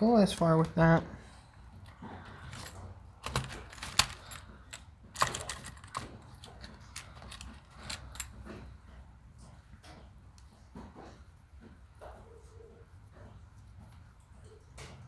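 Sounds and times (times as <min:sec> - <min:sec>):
connectors clicking and rattling: 0:01.7 - 0:08.6.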